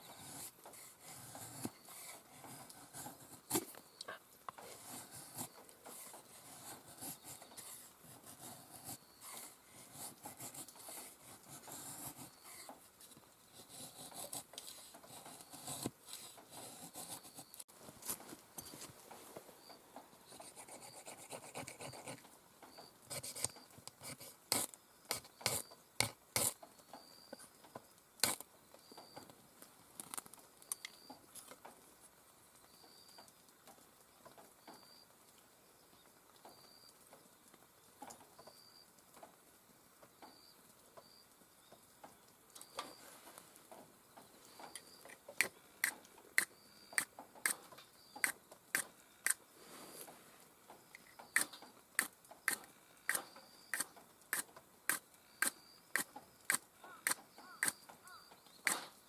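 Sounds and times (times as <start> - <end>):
rain hissing: 48.7 - 51.2.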